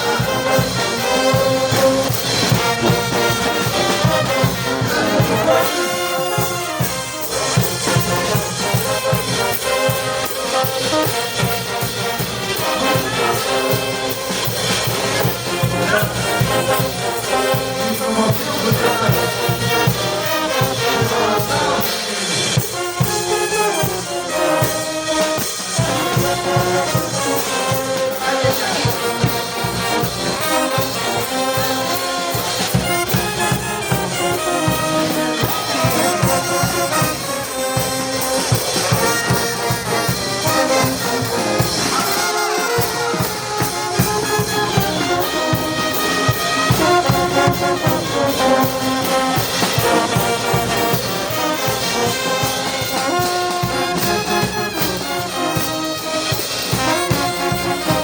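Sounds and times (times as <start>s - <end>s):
brass band playing: 0.0s - 58.0s
steady drum beat: 0.0s - 58.0s.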